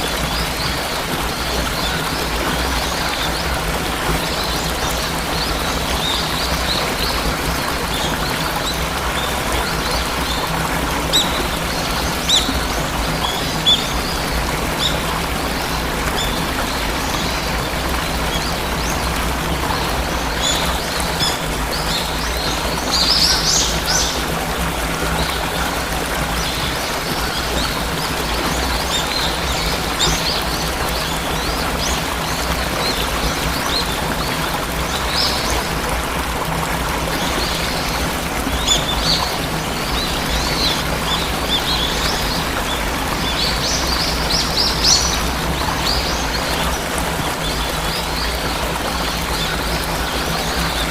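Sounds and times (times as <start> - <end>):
waterfall rushing: 0.0 - 50.9
small birds chirping: 0.2 - 35.8.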